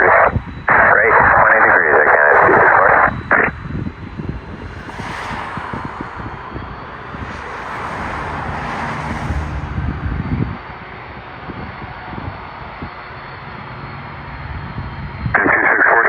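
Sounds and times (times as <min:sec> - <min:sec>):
wind buffeting the microphone: 0:00.0 - 0:01.6, 0:02.4 - 0:13.7
jet engines roaring: 0:00.0 - 0:16.0.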